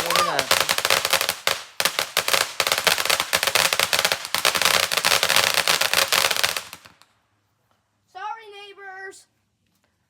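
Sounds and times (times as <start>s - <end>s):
fireworks crackling and popping: 0.0s - 7.2s.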